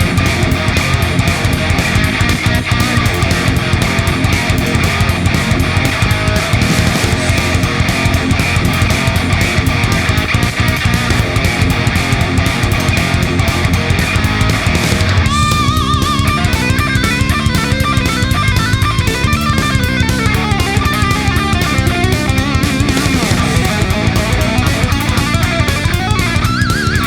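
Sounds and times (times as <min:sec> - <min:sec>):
guitar lead line with vibrato: 0:00.0 - 0:27.0
hard rock music: 0:00.0 - 0:27.0
steady drum beat: 0:00.0 - 0:27.0.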